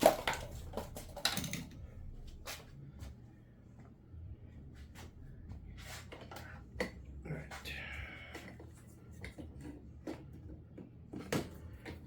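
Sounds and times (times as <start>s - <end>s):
clicks and knocks of parts handled: 0.0s - 1.8s
low steady hum: 0.0s - 12.0s.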